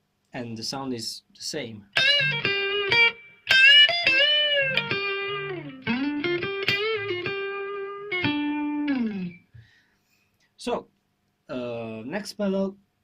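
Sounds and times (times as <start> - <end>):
electric guitar lead with bends: 2.0 - 9.5.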